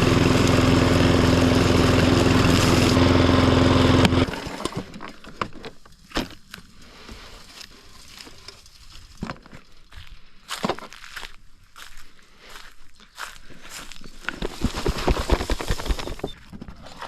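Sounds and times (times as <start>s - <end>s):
mower engine running: 0.0s - 5.0s, 14.4s - 16.3s.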